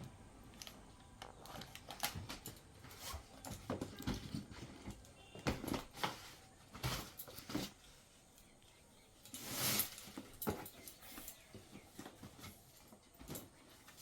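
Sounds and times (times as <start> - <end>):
packaging and cloth rustling: 1.3 - 8.4, 9.2 - 14.0.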